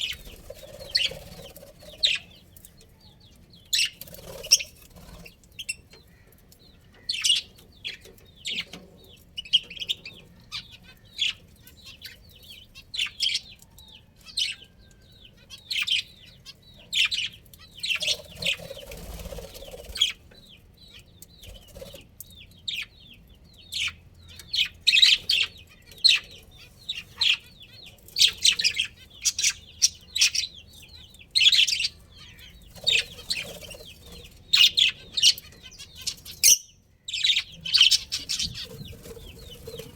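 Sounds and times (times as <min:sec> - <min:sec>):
budgerigars chirping: 0:00.0 - 0:02.4, 0:23.7 - 0:39.9.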